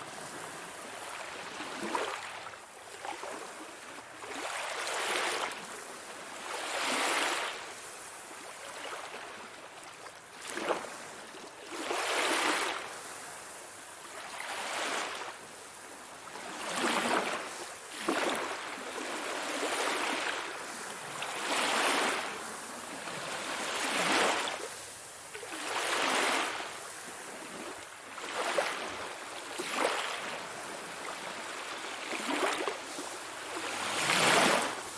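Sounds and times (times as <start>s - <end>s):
sea waves washing in: 16.4s - 34.9s.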